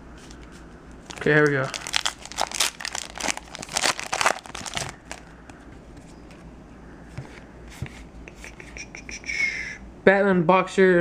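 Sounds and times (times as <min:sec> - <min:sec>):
foil wrapper crinkling: 0:01.0 - 0:05.3.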